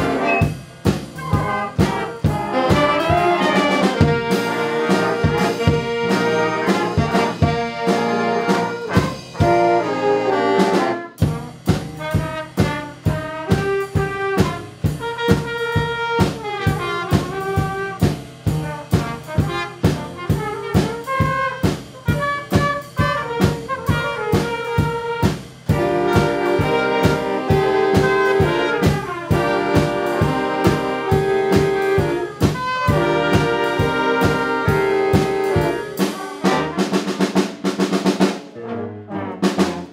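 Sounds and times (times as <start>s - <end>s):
bass line: 0.0s - 15.5s, 25.7s - 39.9s
steady drum beat: 0.0s - 38.6s, 39.4s - 39.9s
school band brass horns: 0.0s - 39.9s.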